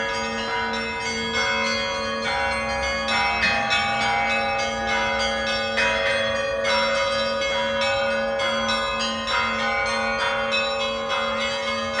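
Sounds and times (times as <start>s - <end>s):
hum of large bells: 0.0s - 12.0s
small church bells struck: 0.0s - 12.0s.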